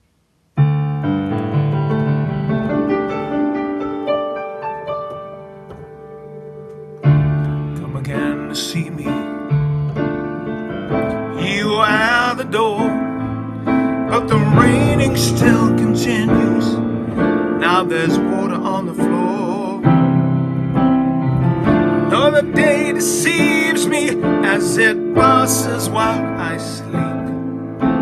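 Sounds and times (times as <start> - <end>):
piano chords: 0.5 - 28.0
person singing with vibrato: 11.3 - 13.4, 14.1 - 16.9, 17.6 - 20.0, 21.9 - 27.4.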